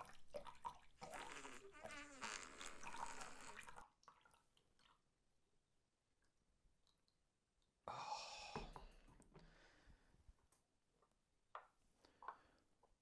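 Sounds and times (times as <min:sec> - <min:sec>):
long buzzy fart: 0:01.0 - 0:03.8.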